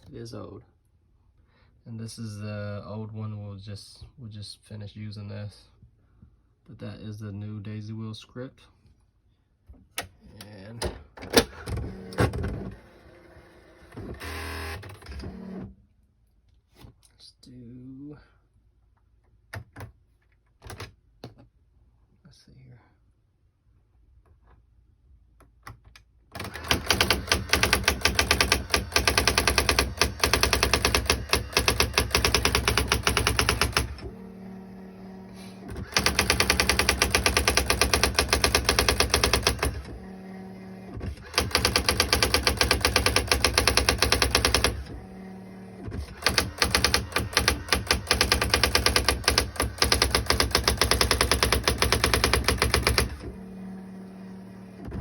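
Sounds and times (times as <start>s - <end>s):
electronic typewriter printing: 11.3s - 15.7s, 26.4s - 55.0s.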